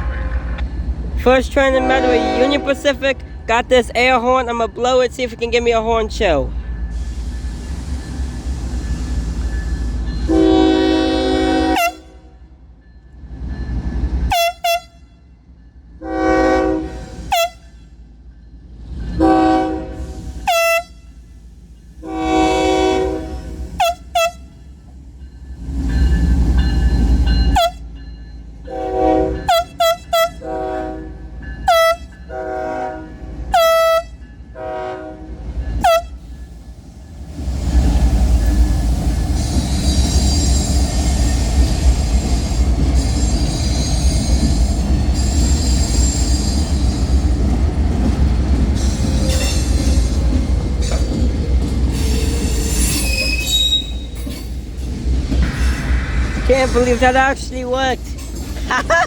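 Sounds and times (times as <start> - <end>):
diesel train rumbling: 0.0 - 59.0
locomotive multi-chime horn: 1.3 - 6.9, 9.6 - 12.4, 14.3 - 15.2, 16.0 - 17.7, 19.2 - 21.1, 22.0 - 24.7, 26.1 - 36.4
handheld air horn blasts: 16.0 - 17.6.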